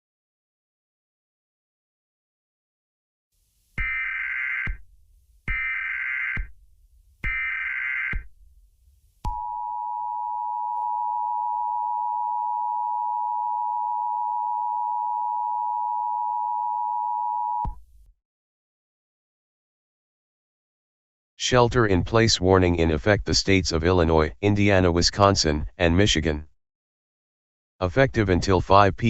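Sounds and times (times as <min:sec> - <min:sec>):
data burst tones: 0:03.8 - 0:04.8, 0:07.2 - 0:08.3.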